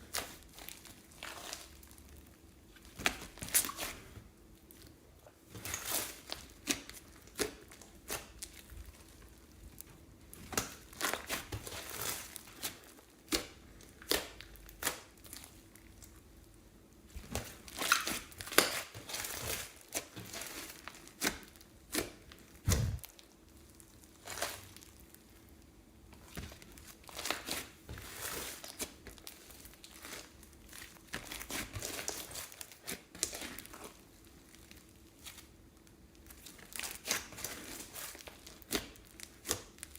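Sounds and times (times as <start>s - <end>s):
slime squeezed from plastic bags: 17.4s - 23.5s.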